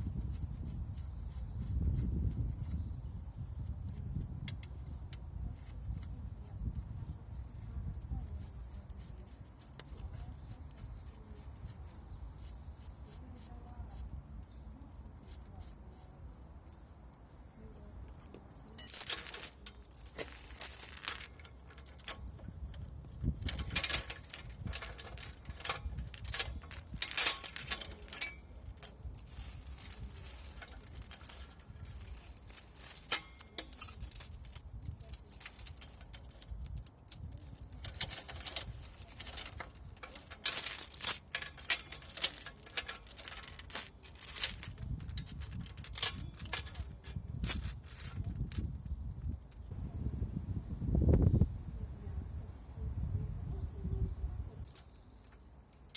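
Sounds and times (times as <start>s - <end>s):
tools clinking on steel: 18.7s - 48.7s.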